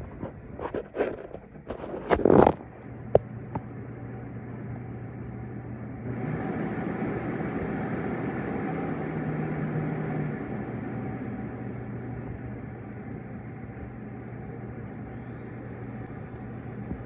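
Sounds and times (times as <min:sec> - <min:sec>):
humidifier fan running: 0:00.0 - 0:17.0
sharp clicks: 0:12.8 - 0:17.0.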